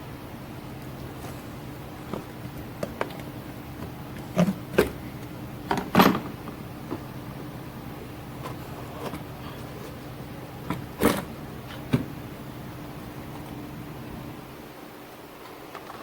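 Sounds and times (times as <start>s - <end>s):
steady low hum: 0.0s - 15.7s
tools knocking and clanking: 5.7s - 7.0s.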